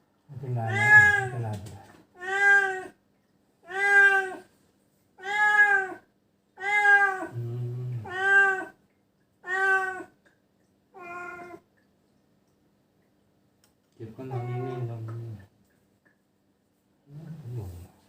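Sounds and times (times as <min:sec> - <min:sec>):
cat meowing: 0:00.5 - 0:01.6, 0:02.2 - 0:03.0, 0:03.6 - 0:04.4, 0:05.2 - 0:06.0, 0:06.6 - 0:07.4, 0:08.0 - 0:08.8, 0:09.4 - 0:10.1, 0:11.0 - 0:11.6, 0:14.2 - 0:15.0.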